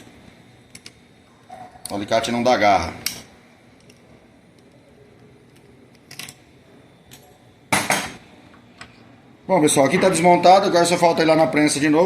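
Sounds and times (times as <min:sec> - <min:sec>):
small metal clicks of parts: 0:00.7 - 0:01.0, 0:05.4 - 0:06.4.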